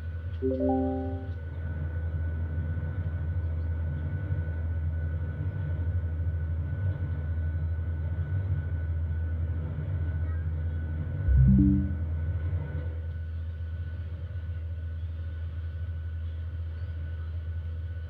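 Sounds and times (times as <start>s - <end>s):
short low hum: 11.3s - 12.2s.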